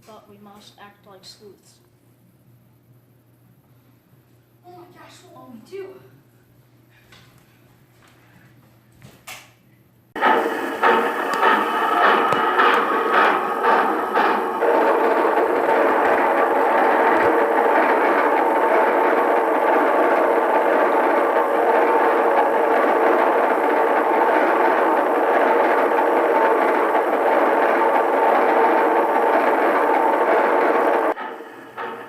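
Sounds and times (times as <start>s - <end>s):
train running: 10.2s - 32.0s.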